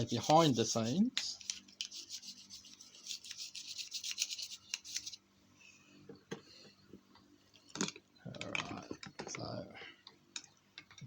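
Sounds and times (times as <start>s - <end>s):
brush scrubbing metal: 0.0s - 5.2s.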